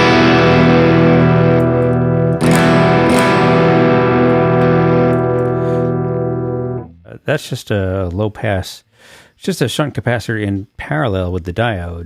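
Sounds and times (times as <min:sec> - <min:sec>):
electric guitar chords: 0:00.0 - 0:07.0.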